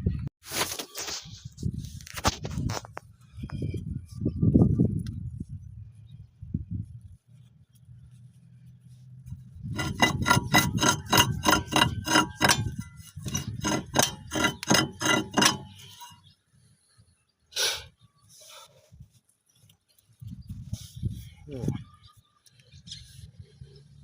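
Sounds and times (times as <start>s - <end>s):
short scrape or rustle: 0.4s - 2.9s.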